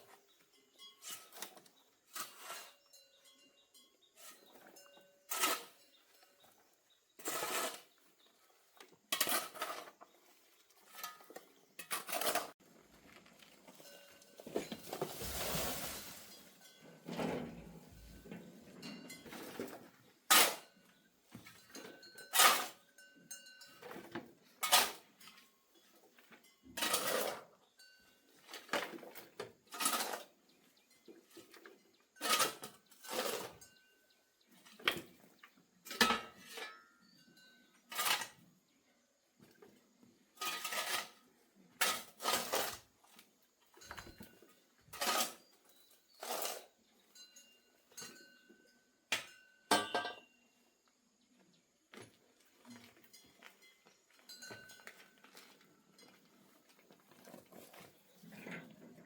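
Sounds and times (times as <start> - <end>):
soil scraping rush: 7.2 - 8.0, 14.6 - 18.2.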